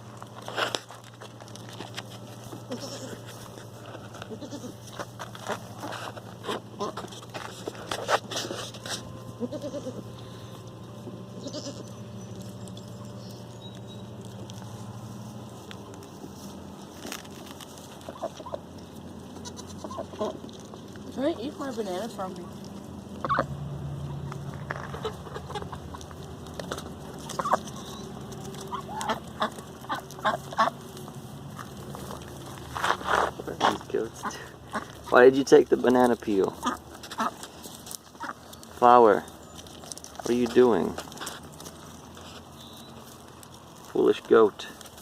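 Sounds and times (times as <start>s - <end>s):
chickens clucking: 2.2s - 15.2s, 17.5s - 32.4s, 33.2s - 44.9s
goat bleating: 2.4s - 5.1s, 6.6s - 7.2s, 9.2s - 10.6s, 11.2s - 12.5s, 19.2s - 20.5s, 24.8s - 31.0s.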